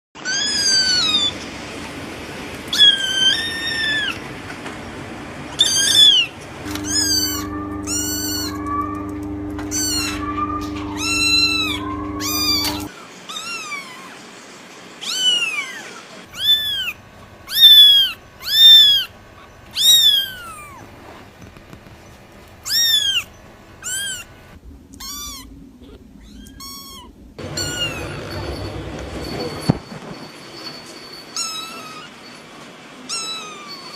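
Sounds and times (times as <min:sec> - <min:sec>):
kittens meowing: 0:05.6 - 0:14.2, 0:15.0 - 0:19.1, 0:19.7 - 0:20.8, 0:22.6 - 0:24.3, 0:24.9 - 0:28.6, 0:33.1 - 0:33.9
steady hum: 0:06.2 - 0:12.9, 0:16.3 - 0:31.2.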